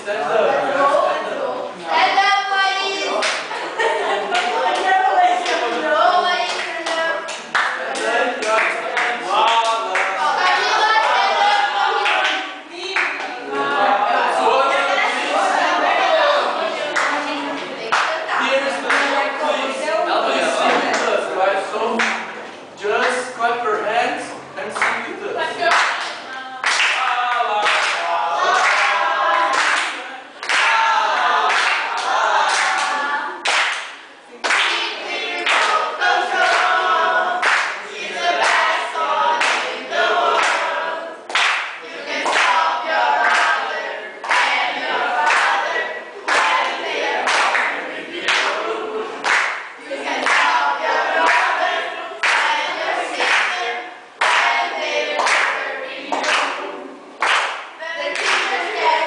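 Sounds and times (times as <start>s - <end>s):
voices singing together: 0.0s - 59.0s
handclaps: 22.0s - 22.3s, 25.7s - 28.0s, 31.5s - 34.7s, 37.4s - 37.8s, 41.3s - 42.6s, 49.2s - 50.5s, 52.2s - 52.6s, 54.2s - 54.5s, 55.2s - 56.6s, 57.2s - 58.6s.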